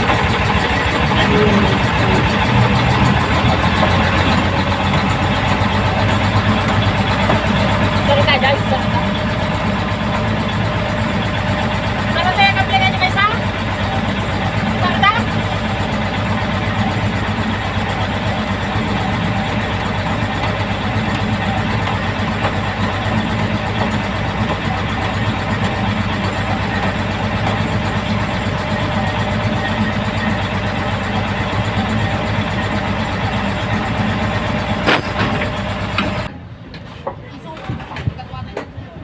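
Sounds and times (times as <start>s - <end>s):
large engine idling: 0.0s - 39.0s.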